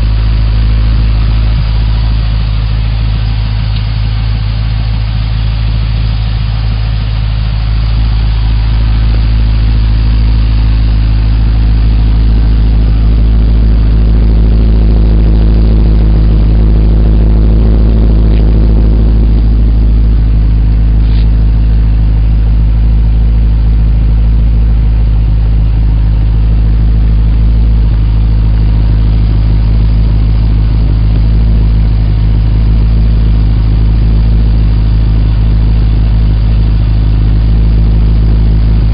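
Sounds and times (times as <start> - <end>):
deep car exhaust note: 0.0 - 38.9.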